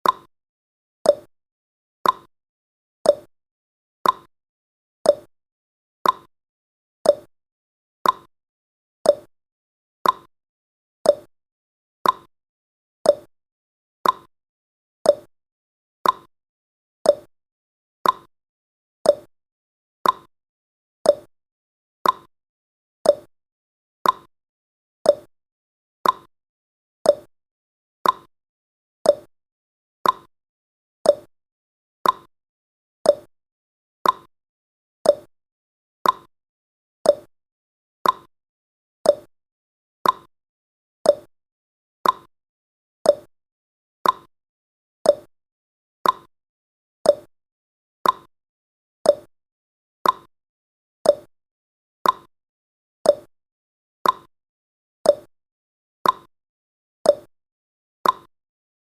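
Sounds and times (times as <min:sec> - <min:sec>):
clock ticking tick-tock: 0:00.0 - 0:00.3, 0:01.1 - 0:01.3, 0:02.0 - 0:02.3, 0:03.1 - 0:03.3, 0:04.0 - 0:04.3, 0:05.1 - 0:05.3, 0:06.0 - 0:06.3, 0:07.1 - 0:07.3, 0:08.0 - 0:08.3, 0:09.1 - 0:09.3, 0:10.0 - 0:10.3, 0:11.1 - 0:11.3, 0:12.0 - 0:12.3, 0:13.1 - 0:13.3, 0:14.0 - 0:14.3, 0:15.1 - 0:15.3, 0:16.0 - 0:16.3, 0:17.1 - 0:17.3, 0:18.0 - 0:18.3, 0:19.1 - 0:19.3, 0:20.0 - 0:20.3, 0:21.0 - 0:21.3, 0:22.0 - 0:22.3, 0:23.0 - 0:23.3, 0:24.0 - 0:24.3, 0:25.0 - 0:25.3, 0:26.0 - 0:26.3, 0:27.0 - 0:27.3, 0:28.0 - 0:28.3, 0:29.0 - 0:29.3, 0:30.0 - 0:30.3, 0:31.0 - 0:31.3, 0:32.0 - 0:32.3, 0:33.0 - 0:33.3, 0:34.0 - 0:34.3, 0:35.0 - 0:35.3, 0:36.0 - 0:36.3, 0:37.0 - 0:37.3, 0:38.0 - 0:38.3, 0:39.0 - 0:39.3, 0:40.0 - 0:40.3, 0:41.0 - 0:41.3, 0:42.0 - 0:42.3, 0:43.0 - 0:43.3, 0:44.0 - 0:44.3, 0:45.0 - 0:45.3, 0:46.0 - 0:46.3, 0:47.0 - 0:47.3, 0:48.0 - 0:48.3, 0:49.1 - 0:49.3, 0:50.0 - 0:50.3, 0:51.0 - 0:51.3, 0:52.0 - 0:52.3, 0:53.1 - 0:53.3, 0:54.0 - 0:54.3, 0:55.1 - 0:55.3, 0:56.0 - 0:56.3, 0:57.1 - 0:57.3, 0:58.0 - 0:58.3.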